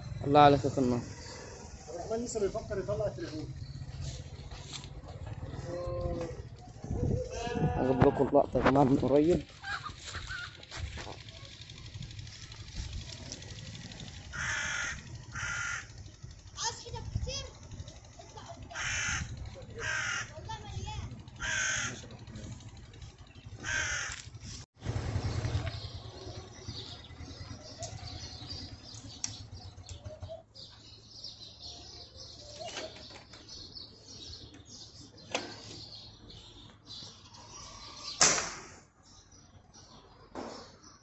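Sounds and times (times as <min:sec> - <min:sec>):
crow cawing: 0:14.3 - 0:16.1, 0:18.7 - 0:20.5, 0:21.4 - 0:22.2, 0:23.6 - 0:24.2
sharp crack: 0:38.2 - 0:38.9.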